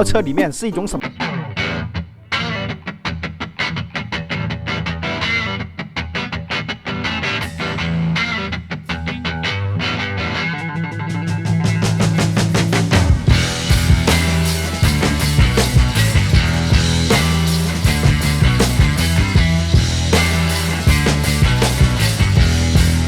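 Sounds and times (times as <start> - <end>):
guitar music with steady beat: 1.0 - 23.0
sustained bass notes: 10.7 - 23.0.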